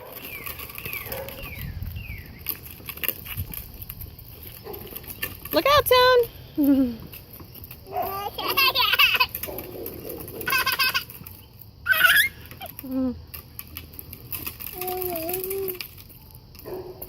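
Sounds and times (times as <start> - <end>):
child crying: 11.9 - 12.4
child squealing: 11.9 - 12.6.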